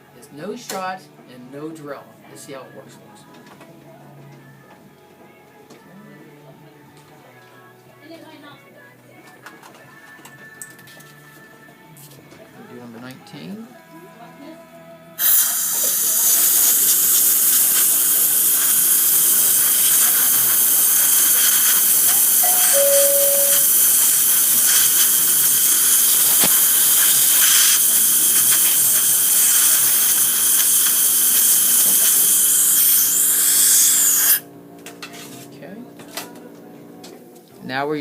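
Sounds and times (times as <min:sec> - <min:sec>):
air-abrasion handpiece hissing: 0:15.2 - 0:34.4.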